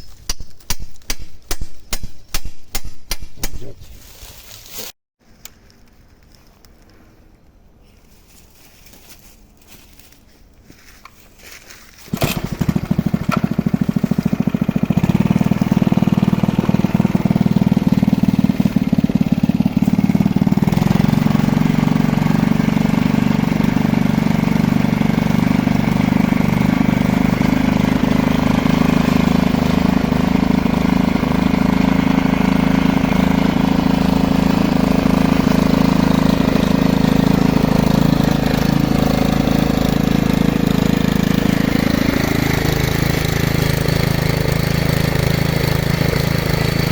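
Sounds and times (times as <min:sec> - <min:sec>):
drilling rig engine running: 0:12.2 - 0:46.9.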